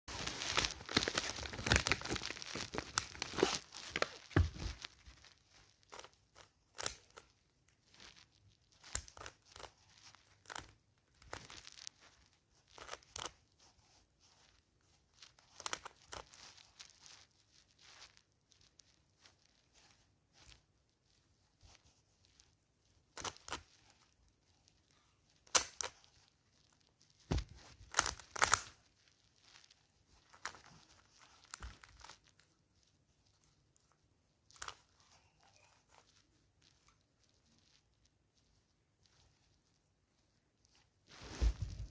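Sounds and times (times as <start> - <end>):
packaging crackles and clicks: 0.1 - 7.3
packaging tearing and rustling: 0.1 - 7.3, 25.4 - 32.4.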